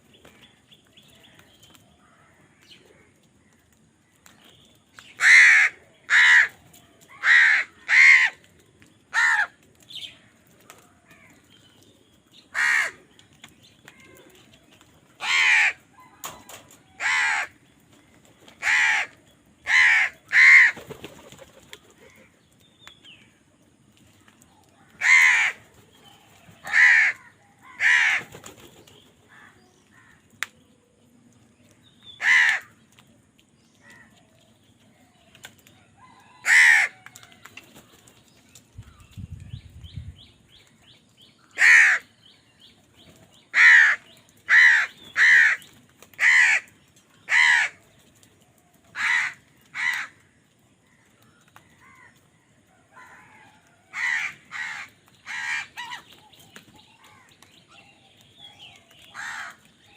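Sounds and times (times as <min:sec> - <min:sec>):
crows cawing: 0:05.1 - 0:08.5, 0:09.1 - 0:09.6, 0:12.5 - 0:13.1, 0:15.2 - 0:17.6, 0:18.6 - 0:20.9, 0:24.8 - 0:25.6, 0:26.6 - 0:28.5, 0:29.3 - 0:30.4, 0:32.2 - 0:32.8, 0:36.2 - 0:37.3, 0:41.5 - 0:42.1, 0:43.5 - 0:47.8, 0:48.9 - 0:52.2, 0:52.9 - 0:56.1, 0:59.0 - 0:59.7.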